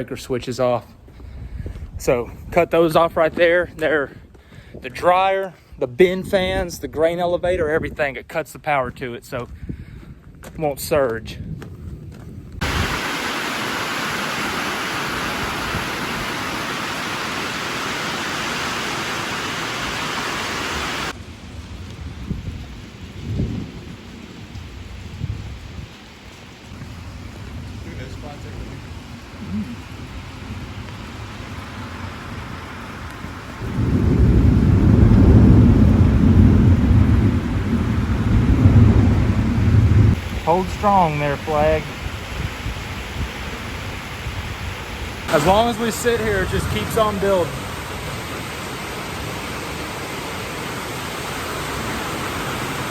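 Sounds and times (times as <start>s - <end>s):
heavy rain hissing: 12.6s - 21.2s, 22.0s - 52.9s
low roll of thunder: 21.1s - 26.0s, 26.8s - 40.8s.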